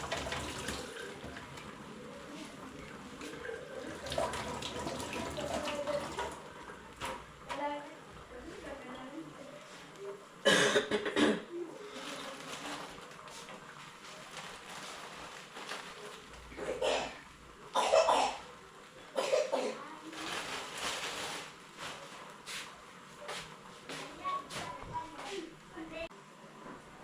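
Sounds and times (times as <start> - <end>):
person coughing: 10.4 - 11.5, 16.6 - 17.2, 17.8 - 18.4, 19.2 - 19.8.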